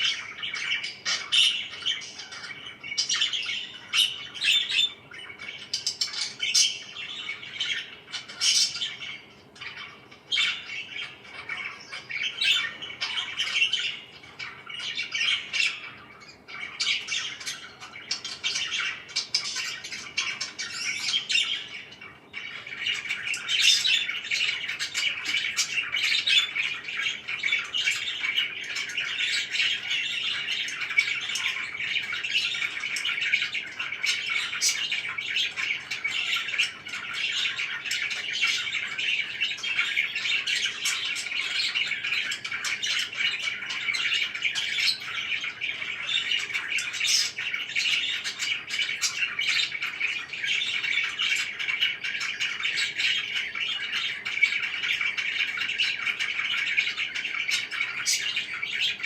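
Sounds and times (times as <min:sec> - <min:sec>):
parakeets chirping and squawking: 0:00.0 - 0:59.0.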